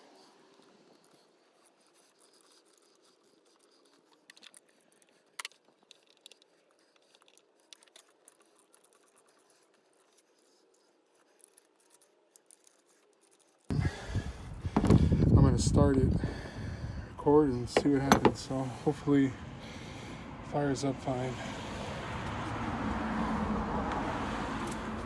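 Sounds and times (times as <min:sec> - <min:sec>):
person speaking: 0:17.1 - 0:19.4, 0:20.4 - 0:21.6.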